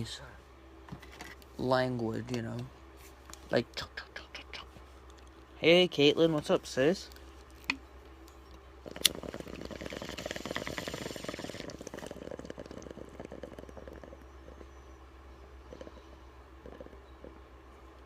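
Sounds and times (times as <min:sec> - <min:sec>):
woman snoring: 0:08.9 - 0:14.2.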